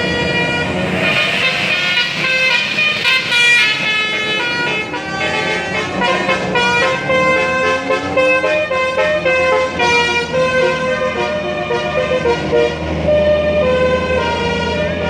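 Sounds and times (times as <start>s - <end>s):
musical air horn melody: 0.0s - 13.0s.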